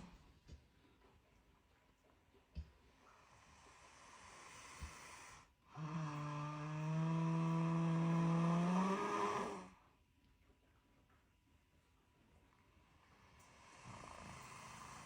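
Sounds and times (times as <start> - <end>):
loud droning snore: 3.7 - 9.8, 13.5 - 15.0.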